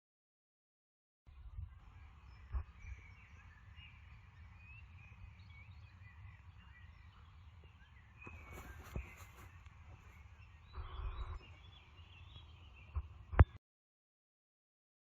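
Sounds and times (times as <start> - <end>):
small birds chirping: 1.3 - 13.6.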